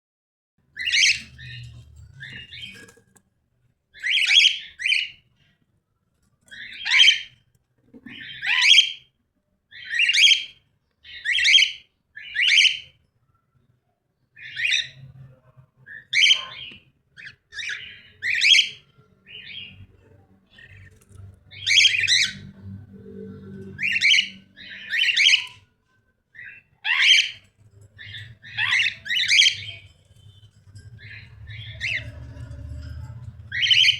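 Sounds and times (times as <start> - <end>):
cockatiel calls: 0.8 - 1.6, 8.1 - 9.0, 15.9 - 18.8, 23.8 - 25.6, 26.4 - 27.4, 28.0 - 29.9.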